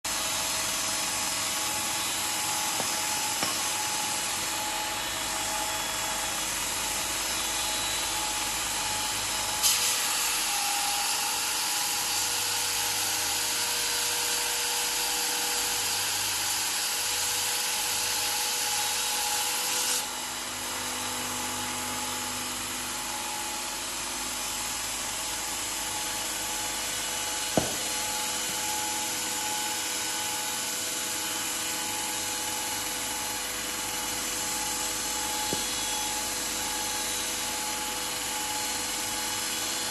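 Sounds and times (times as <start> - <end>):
metal sanding machine running: 22.7 - 39.9.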